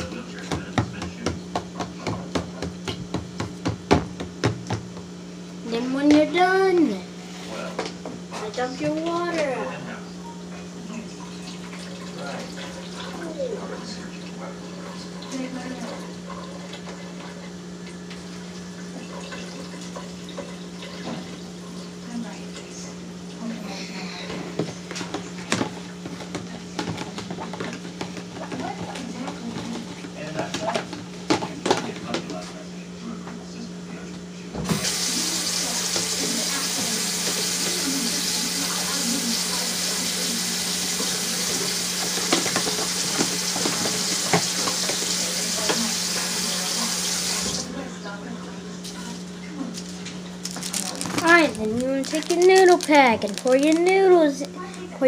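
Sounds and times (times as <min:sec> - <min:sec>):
water splashing into sink: 0:34.7 - 0:47.7
constant low hum: 0:48.2 - 0:55.0.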